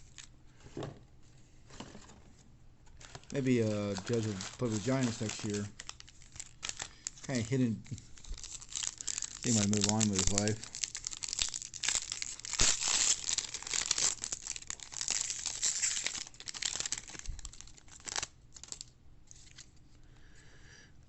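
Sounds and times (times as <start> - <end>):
foil wrapper tearing and crinkling: 3.0 - 19.7.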